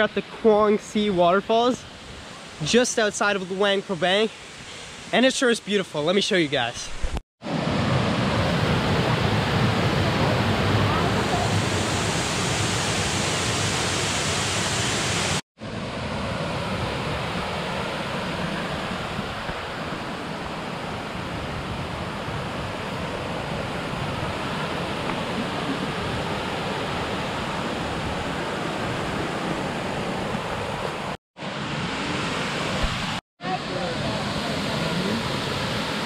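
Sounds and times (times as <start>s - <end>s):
waterfall rushing: 7.5s - 15.4s.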